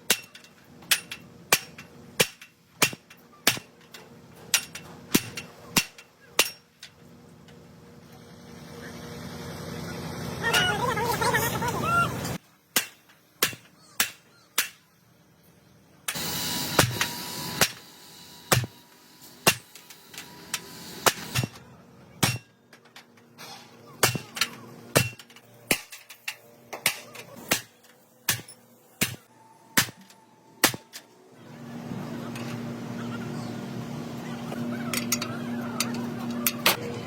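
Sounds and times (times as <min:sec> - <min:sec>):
hammer striking metal: 0:00.1 - 0:03.9, 0:04.5 - 0:06.8, 0:12.8 - 0:14.8, 0:16.1 - 0:17.8, 0:18.5 - 0:18.8, 0:19.4 - 0:21.6, 0:22.2 - 0:22.6, 0:24.0 - 0:31.0.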